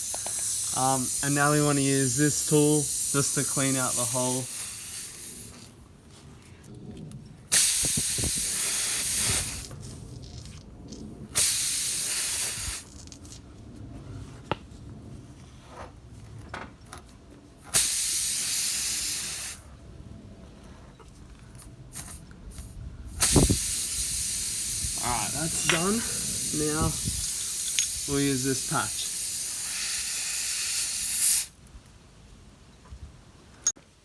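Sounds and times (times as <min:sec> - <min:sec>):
air hissing from tyre: 0:00.0 - 0:05.8, 0:07.5 - 0:10.1, 0:11.4 - 0:12.9, 0:17.7 - 0:19.7, 0:21.9 - 0:31.6.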